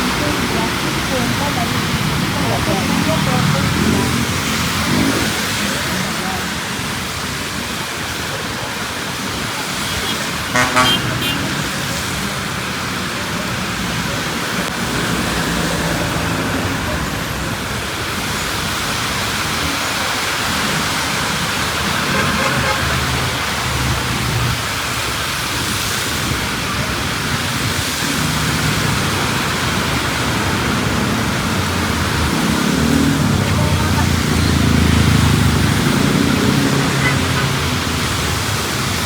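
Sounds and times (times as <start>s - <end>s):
rain hiss: 0.0s - 39.0s
vehicle engines running: 0.0s - 39.0s
wet tyres on road: 0.0s - 39.0s
vehicle horn toot: 10.0s - 11.7s, 22.1s - 23.2s.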